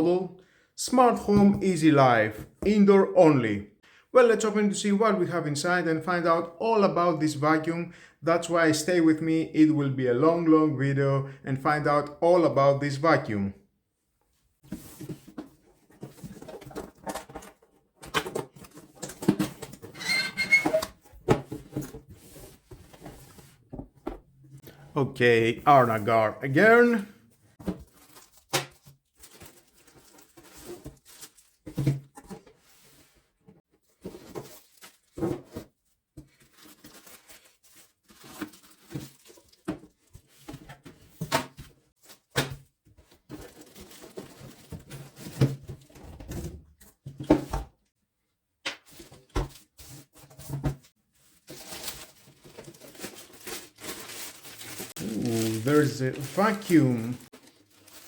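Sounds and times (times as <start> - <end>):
cardboard rustling and scraping: 14.6 - 24.3, 27.5 - 42.3, 48.9 - 58.0.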